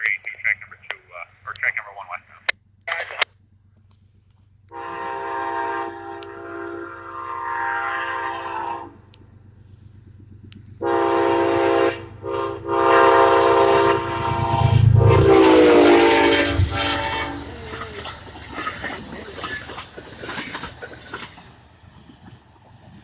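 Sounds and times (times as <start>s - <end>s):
passing train rumble: 0.0s - 23.0s
locomotive air horn blasts: 4.7s - 9.0s, 10.8s - 18.2s.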